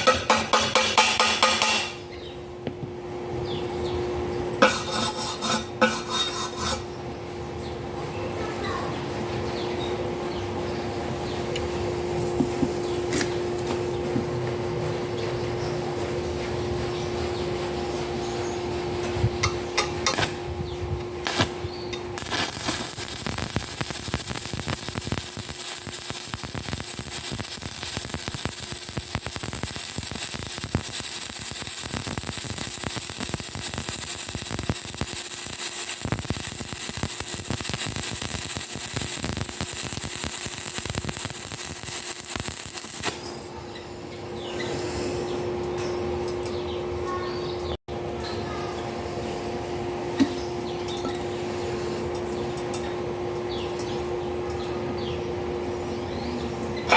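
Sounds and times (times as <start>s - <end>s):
steady hum: 9.1s - 56.9s
welding arc crackling: 21.2s - 43.5s.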